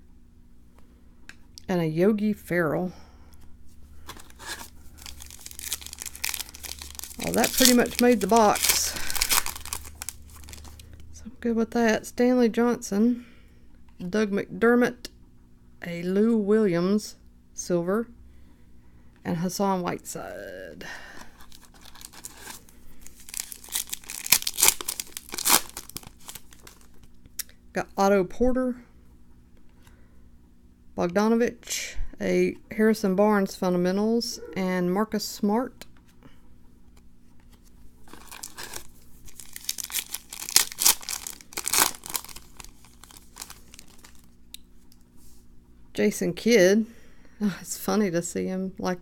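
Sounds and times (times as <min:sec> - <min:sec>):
plastic wrapper tearing and crinkling: 0:04.1 - 0:10.9, 0:21.3 - 0:27.1, 0:38.0 - 0:44.4.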